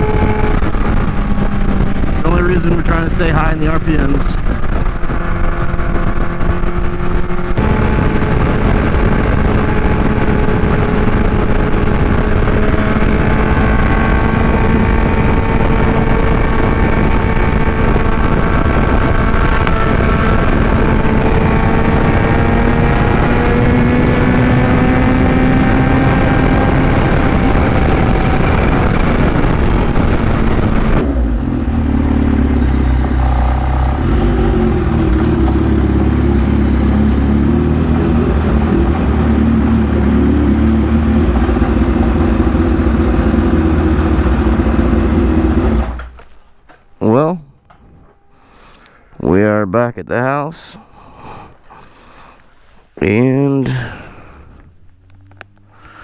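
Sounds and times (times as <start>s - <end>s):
motorcycle engine at high revs: 0.0s - 46.2s.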